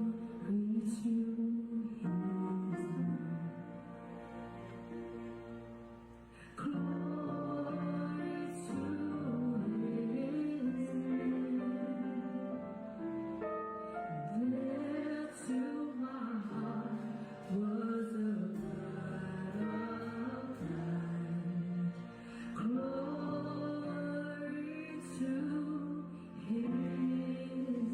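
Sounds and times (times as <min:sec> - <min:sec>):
worship band playing slow song: 0:06.0 - 0:27.9.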